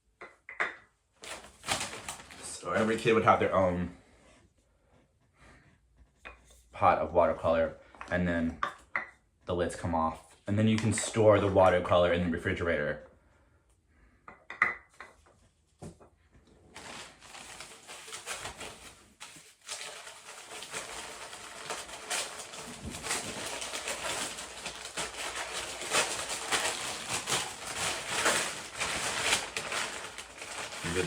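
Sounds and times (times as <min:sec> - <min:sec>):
packaging rustling and crinkling: 0:01.2 - 0:03.5, 0:16.4 - 0:31.0.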